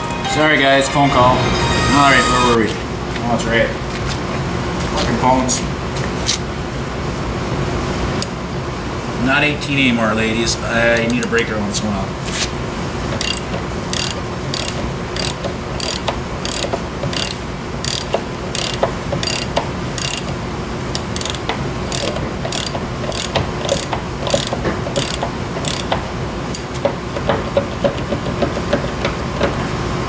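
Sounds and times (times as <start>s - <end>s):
ratchet wrench clicking: 13.2s - 26.7s.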